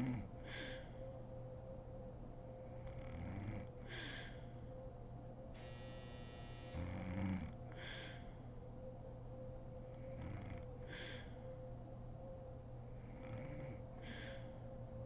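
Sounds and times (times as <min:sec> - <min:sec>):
woman snoring: 0:00.0 - 0:00.3, 0:06.7 - 0:07.6, 0:13.2 - 0:13.8
breathy hiss: 0:00.0 - 0:01.0, 0:03.3 - 0:04.6, 0:05.6 - 0:08.5, 0:10.2 - 0:11.6
faint steady hum: 0:00.0 - 0:15.0.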